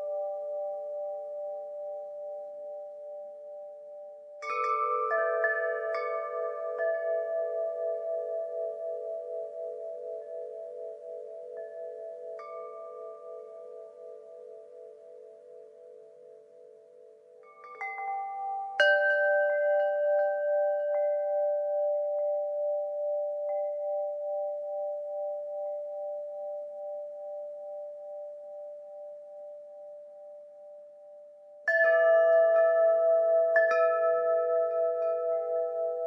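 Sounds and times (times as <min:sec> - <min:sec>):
wind chimes ringing: 0:17.4 - 0:28.3.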